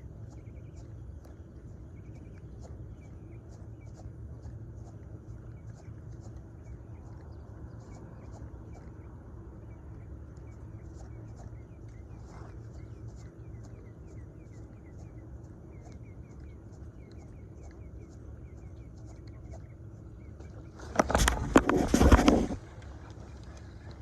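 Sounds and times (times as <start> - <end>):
small animal chirps: 0.0 - 24.0
brief rustle: 20.8 - 23.7.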